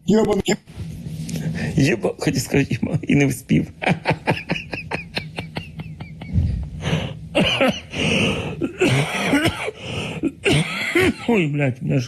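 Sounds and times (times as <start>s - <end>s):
man coughing hard: 7.4s - 7.9s, 8.6s - 11.4s.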